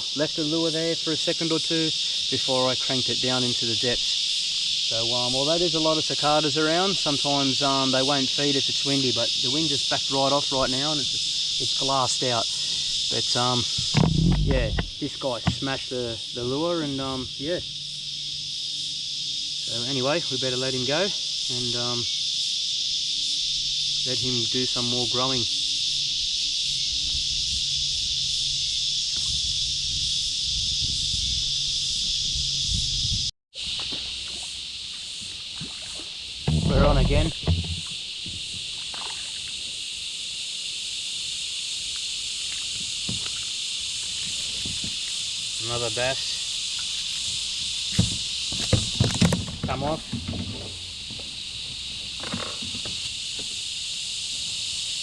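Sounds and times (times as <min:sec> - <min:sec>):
cicadas droning: 0:00.0 - 0:55.0
low rumble: 0:14.0 - 0:15.0.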